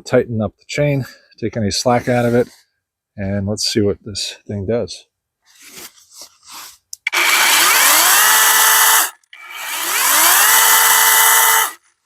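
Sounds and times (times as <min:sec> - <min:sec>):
electric chainsaw motor whining: 0:07.0 - 0:11.9.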